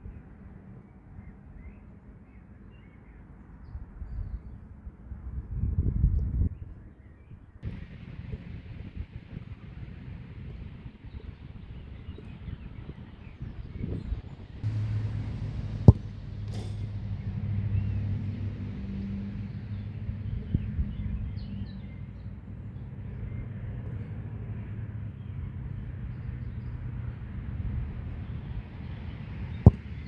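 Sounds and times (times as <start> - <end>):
low engine hum: 7.6 - 30.0
sharp knock: 14.6 - 20.6.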